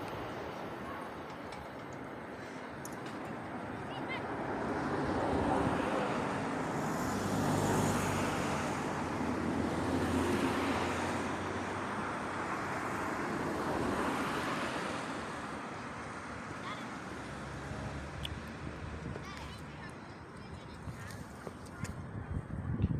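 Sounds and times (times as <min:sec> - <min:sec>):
road traffic rumble: 0:00.0 - 0:22.9.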